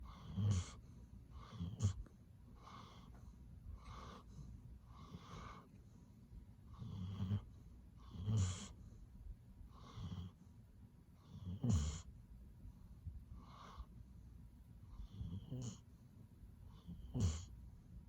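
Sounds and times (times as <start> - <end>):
dog snoring: 0.0 - 3.2, 3.8 - 5.7, 6.7 - 8.8, 9.7 - 10.4, 11.2 - 12.2, 13.3 - 13.9, 14.8 - 15.9, 16.7 - 17.6.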